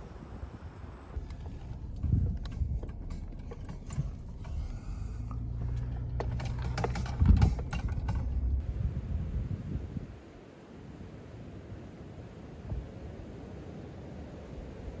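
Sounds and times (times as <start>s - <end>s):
vehicle engine humming: 0.0s - 9.6s
sharp clicks and knocks: 1.2s - 8.6s.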